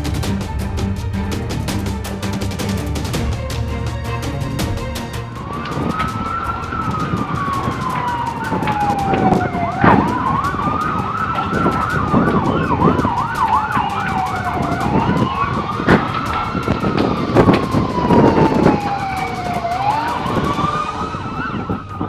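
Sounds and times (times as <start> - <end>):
wailing siren: 5.3 - 22.0
yelping siren: 5.4 - 22.0.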